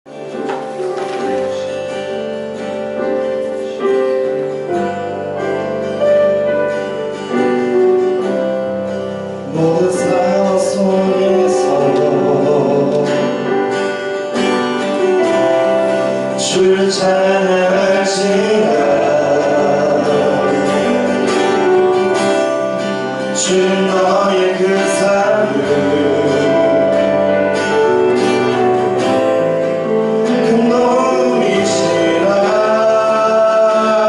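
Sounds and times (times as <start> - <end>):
worship band playing chords: 0.1 - 34.0
person singing: 9.0 - 34.0.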